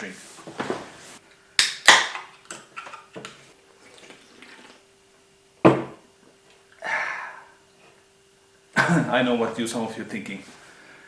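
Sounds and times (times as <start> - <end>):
liquid and handling sounds: 2.3 - 4.9.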